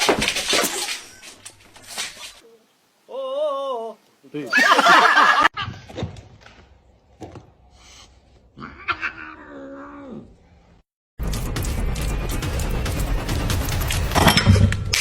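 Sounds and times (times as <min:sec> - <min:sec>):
cat yowling: 0:08.6 - 0:10.2.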